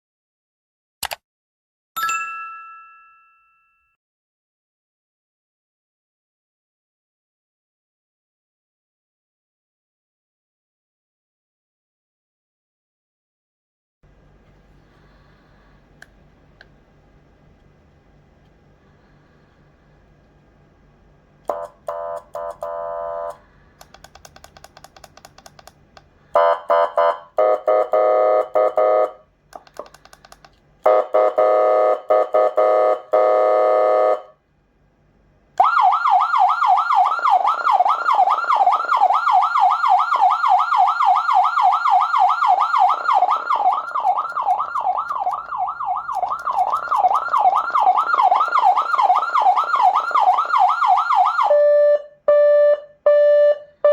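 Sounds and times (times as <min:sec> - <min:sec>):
electronic siren tones: 0:21.5 - 0:23.4, 0:35.6 - 0:53.9
siren fast yelp: 0:35.6 - 0:53.9.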